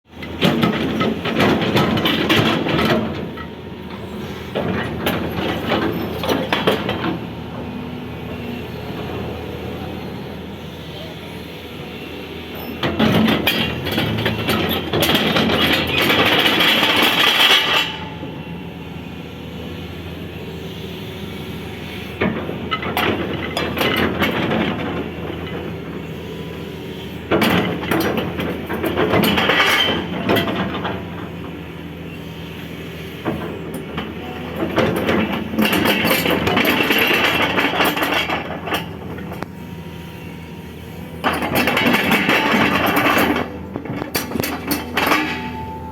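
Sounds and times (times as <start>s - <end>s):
excavator diesel engine running: 0.1s - 45.9s
metallic clanking and clicking: 41.2s - 45.9s.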